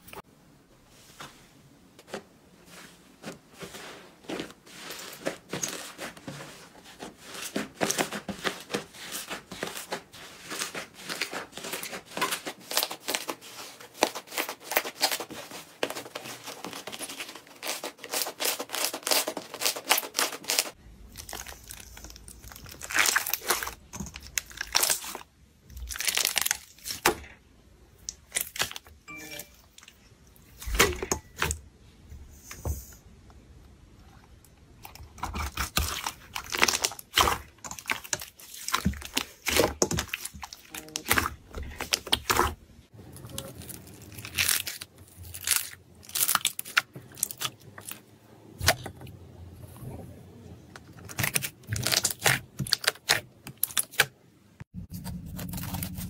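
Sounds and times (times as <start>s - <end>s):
slime crackling and popping: 51.1s - 54.0s.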